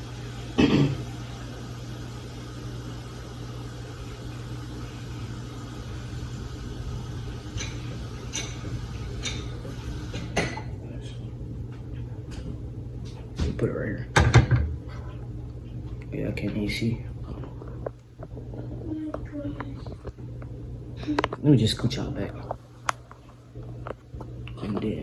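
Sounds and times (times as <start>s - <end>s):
kitchen appliance humming: 0.0s - 13.2s
pots and utensils clicking: 7.5s - 10.7s.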